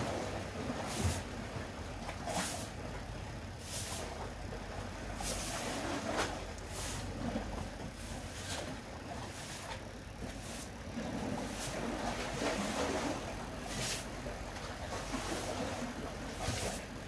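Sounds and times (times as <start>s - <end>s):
steady low rumble: 0.0s - 17.0s.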